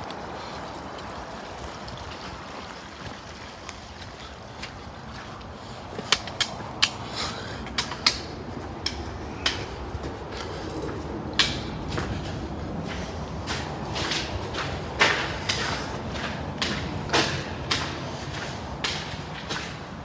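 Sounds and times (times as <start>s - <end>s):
footsteps echoing in tunnel: 0.0s - 20.0s
sharp taps: 11.3s - 19.8s.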